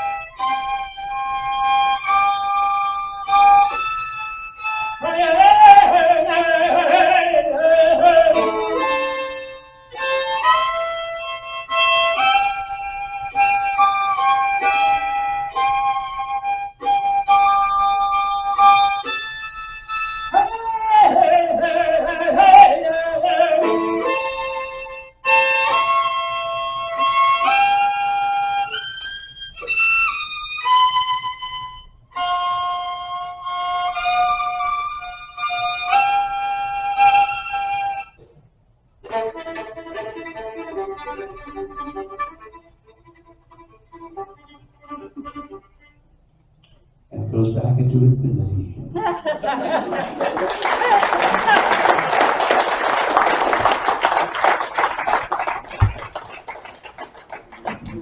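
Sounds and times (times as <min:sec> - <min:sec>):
solo violin melody: 0:00.0 - 0:05.1, 0:08.3 - 0:20.2, 0:23.6 - 0:38.0, 0:39.0 - 0:46.1.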